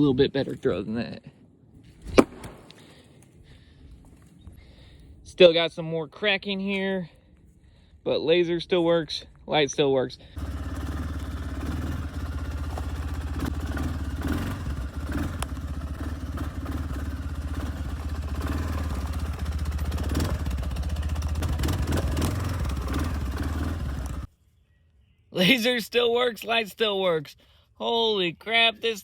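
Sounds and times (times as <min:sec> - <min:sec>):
rattling: 0:10.4 - 0:24.3
vehicle engine low rumble: 0:10.4 - 0:24.3.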